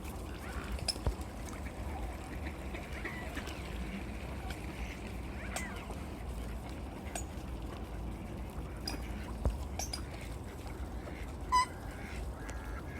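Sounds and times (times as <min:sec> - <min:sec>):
ducks calling: 0:08.8 - 0:12.9.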